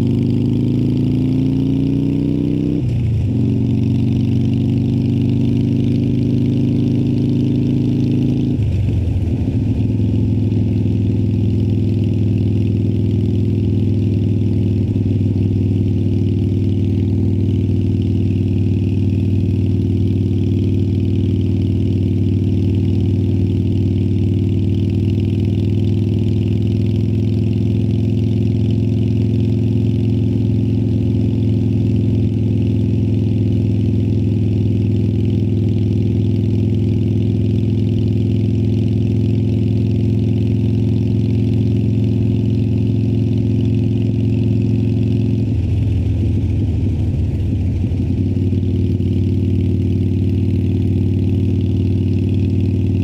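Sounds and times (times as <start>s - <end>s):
motorcycle engine running: 0.0s - 53.0s.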